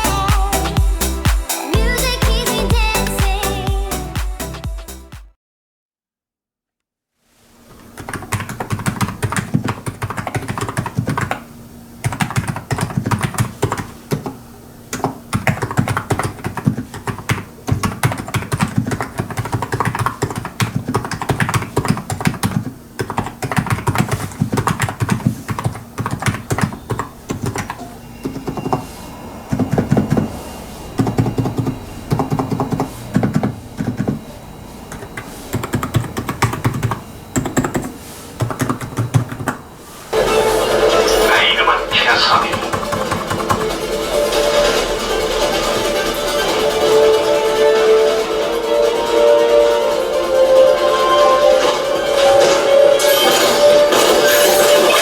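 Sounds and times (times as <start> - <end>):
fast typing on keyboard: 8.0 - 28.8, 31.0 - 34.2, 34.9 - 39.6, 42.4 - 43.9.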